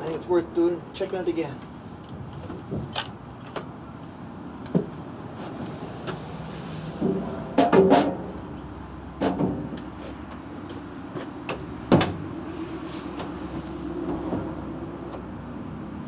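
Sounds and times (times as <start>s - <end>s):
truck door metal clunks: 7.0s - 8.4s, 9.2s - 9.9s, 11.4s - 12.4s.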